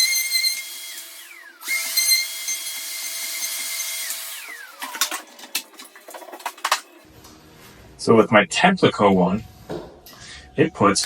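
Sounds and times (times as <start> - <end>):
router motor whine: 0.0 - 5.1.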